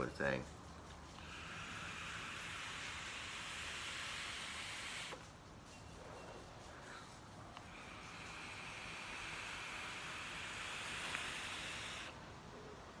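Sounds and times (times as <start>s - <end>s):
vape hiss: 1.2s - 5.3s, 7.5s - 12.2s.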